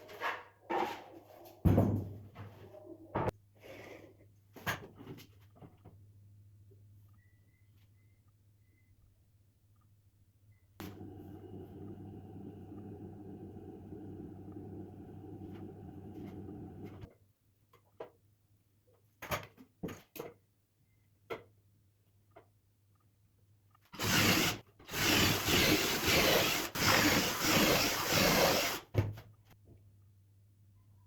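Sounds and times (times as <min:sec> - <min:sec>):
machine hum: 0:10.8 - 0:17.0.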